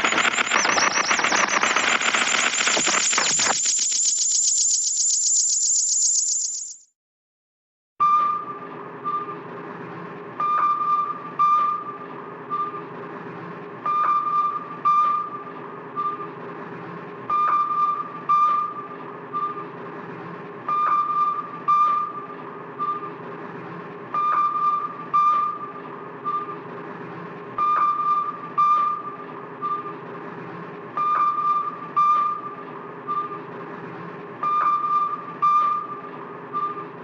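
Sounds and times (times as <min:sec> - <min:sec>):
high electronic beeps: 0:00.0 - 0:06.9.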